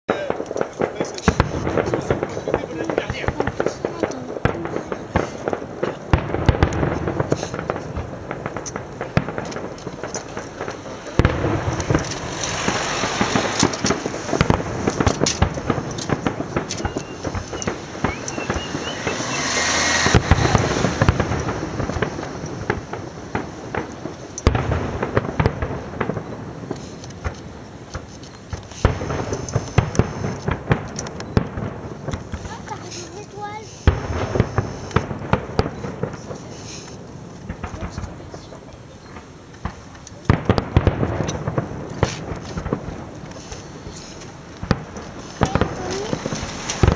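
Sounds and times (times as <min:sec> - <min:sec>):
fireworks bangs and crackling: 0:00.1 - 0:46.9.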